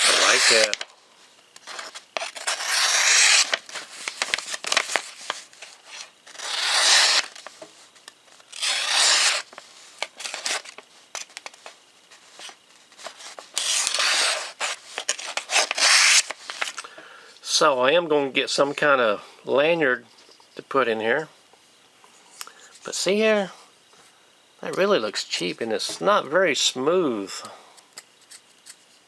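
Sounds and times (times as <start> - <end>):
knife slicing paper: 0.0 - 0.8, 1.7 - 7.5, 8.5 - 10.8, 13.0 - 16.8
paper rustling: 0.0 - 0.9, 1.6 - 16.9.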